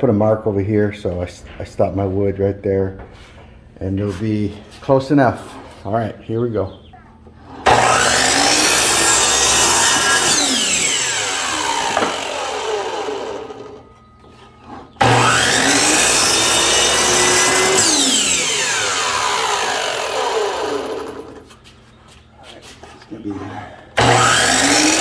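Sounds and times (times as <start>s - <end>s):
table saw cutting wood: 7.4s - 13.9s, 14.6s - 21.6s, 24.0s - 25.0s.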